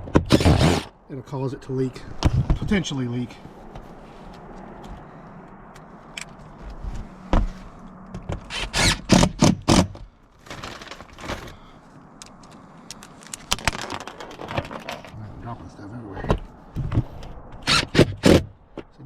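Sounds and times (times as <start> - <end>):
clattering strokes on metal roofing: 10.4 - 11.7.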